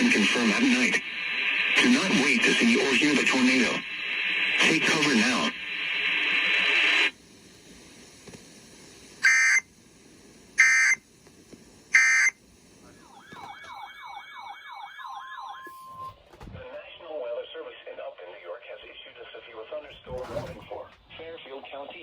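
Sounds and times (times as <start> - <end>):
hissing static: 0.0 - 13.5
electronic siren-like warble: 12.9 - 16.1.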